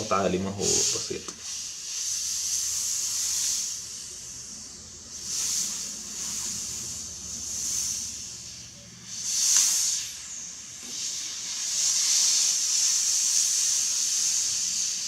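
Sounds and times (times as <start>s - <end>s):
compressed air hissing: 0.0s - 15.0s.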